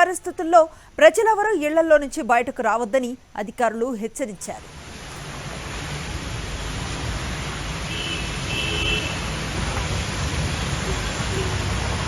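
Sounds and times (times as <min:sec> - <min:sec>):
heavy rain hissing: 0:04.6 - 0:12.0
rumble of vehicles: 0:04.6 - 0:12.0.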